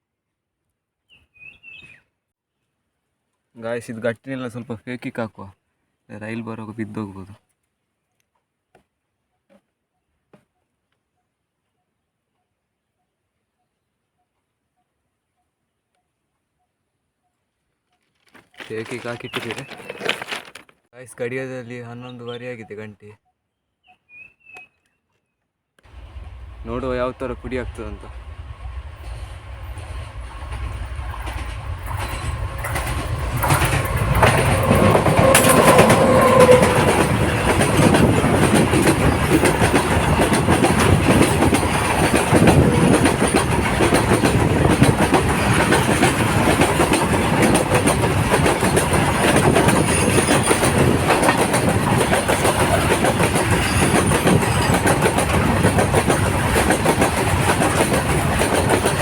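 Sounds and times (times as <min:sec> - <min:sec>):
wheels clattering over rails: 0:18.2 - 0:20.8, 0:28.1 - 0:59.0
train passing at speed: 0:25.9 - 0:59.0.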